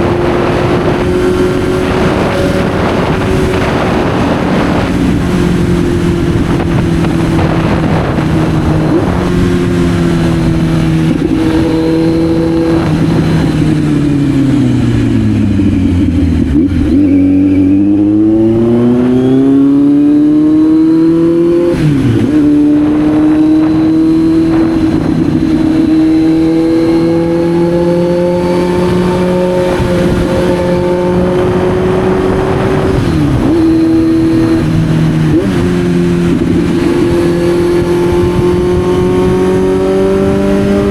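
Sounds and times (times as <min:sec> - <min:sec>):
motorcycle engine riding: 0:00.0 - 0:40.9.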